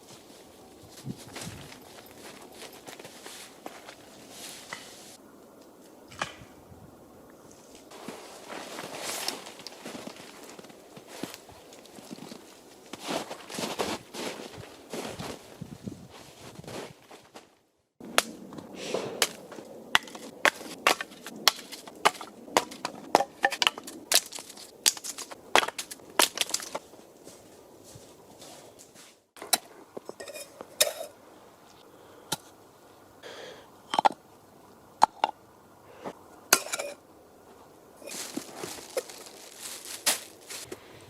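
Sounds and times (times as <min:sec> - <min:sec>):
sharp cracks and knocks: 0:06.1 - 0:06.5, 0:19.2 - 0:26.8.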